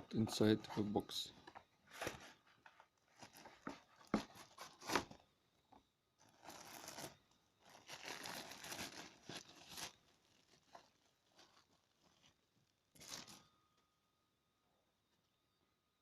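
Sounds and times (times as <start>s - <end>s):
packaging rustling and crinkling: 0.3s - 5.3s, 6.2s - 13.5s.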